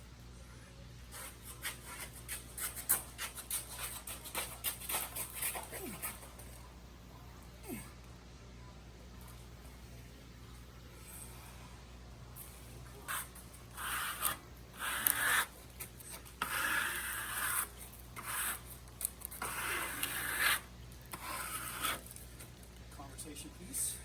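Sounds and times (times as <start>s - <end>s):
faint low hum: 0.0s - 24.0s
scraping strokes against wood: 1.1s - 6.5s, 12.4s - 22.7s.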